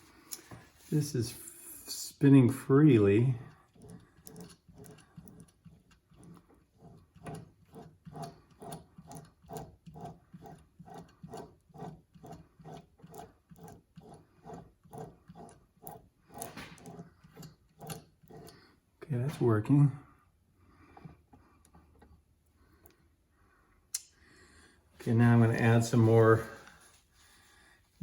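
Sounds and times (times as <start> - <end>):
gears clicking and squishing: 3.6 - 18.6.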